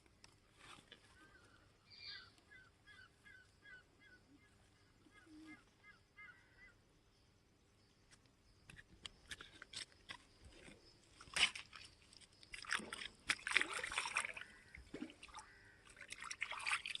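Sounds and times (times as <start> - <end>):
water splashing and sloshing: 8.7 - 17.0.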